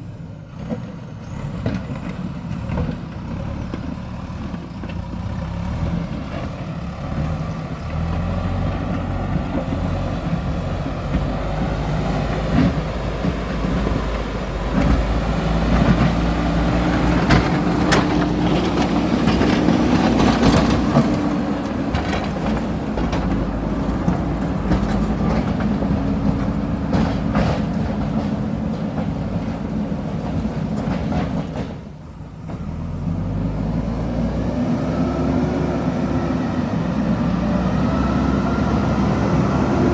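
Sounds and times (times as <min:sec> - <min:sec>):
diesel engine under load: 0:00.0 - 0:39.9
bucket scraping and clanking: 0:08.6 - 0:31.9.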